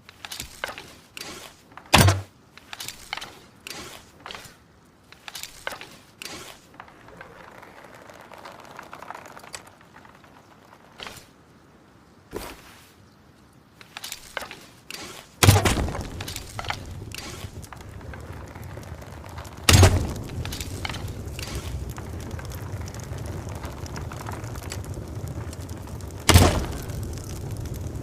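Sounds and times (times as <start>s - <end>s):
bow shot crack: 19.7s - 20.8s, 26.3s - 27.0s.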